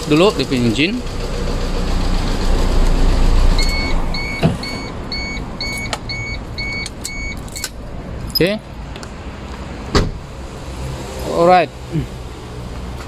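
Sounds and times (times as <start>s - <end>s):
car engine idling: 0.0s - 8.2s
car warning chime beeping: 3.6s - 7.7s.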